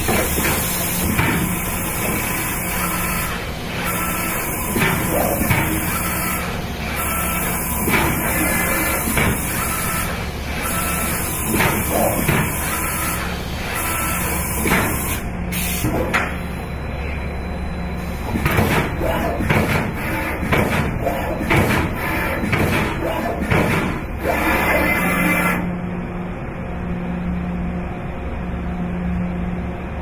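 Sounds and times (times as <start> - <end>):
machine hissing: 0.0 - 16.1
machine hum: 0.0 - 30.0.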